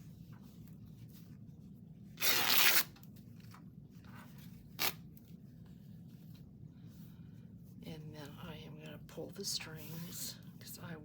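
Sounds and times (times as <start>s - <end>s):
fabric ripping: 2.2s - 3.0s, 4.7s - 5.0s.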